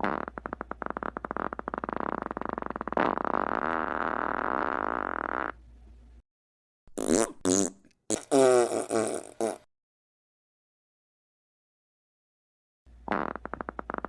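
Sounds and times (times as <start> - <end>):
farting: 0.0 - 5.6, 6.9 - 9.7, 13.1 - 14.0.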